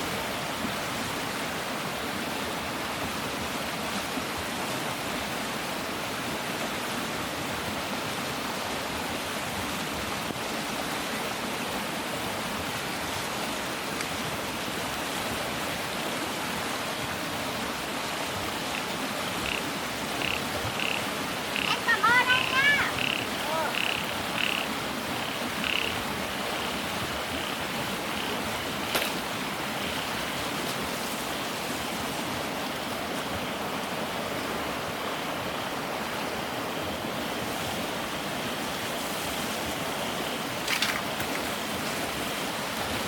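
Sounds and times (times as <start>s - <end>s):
rain and floodwater noise: 0.0s - 43.0s
frogs calling: 18.4s - 29.3s.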